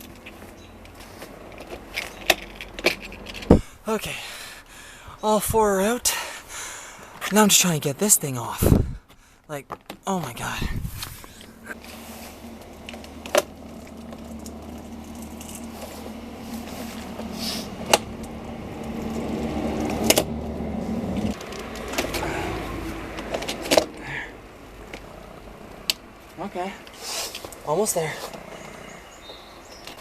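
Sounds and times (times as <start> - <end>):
steady low hum: 10.1 - 29.8.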